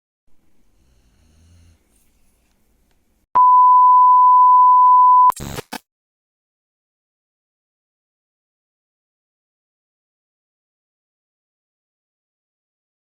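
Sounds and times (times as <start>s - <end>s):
high electronic beep tone: 3.4s - 5.7s.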